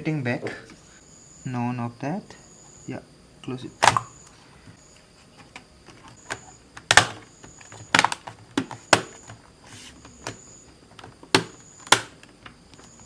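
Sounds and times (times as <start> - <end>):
plastic clicks and knocks: 5.5 - 9.4.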